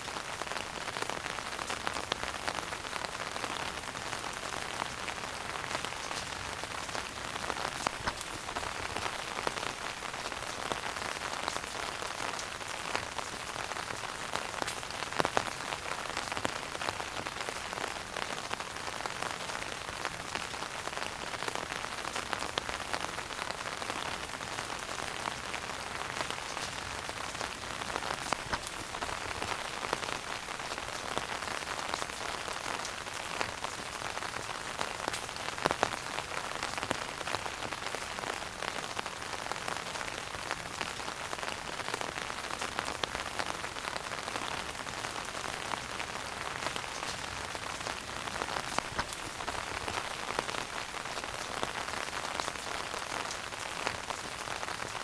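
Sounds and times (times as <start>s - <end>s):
wood fire crackling: 4.6s - 16.5s, 25.3s - 37.7s, 45.6s - 54.4s.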